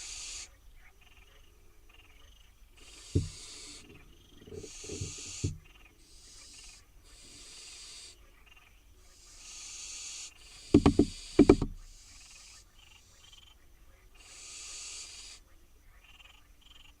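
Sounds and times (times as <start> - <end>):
owl chicks hissing calls: 0.0 - 17.0
knocks on wood: 3.1 - 3.9, 4.5 - 5.6, 10.7 - 11.8.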